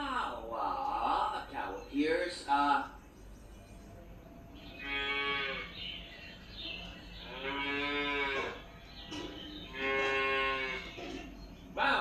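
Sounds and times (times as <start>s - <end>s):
cow mooing: 4.7s - 5.8s, 7.2s - 8.6s, 9.7s - 11.1s.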